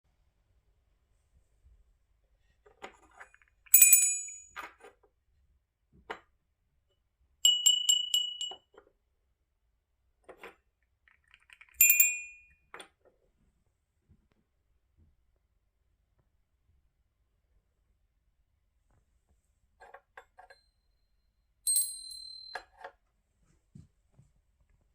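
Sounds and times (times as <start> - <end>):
small metal bells ringing: 3.7 - 4.6, 7.4 - 8.7, 11.8 - 12.5, 21.7 - 22.8.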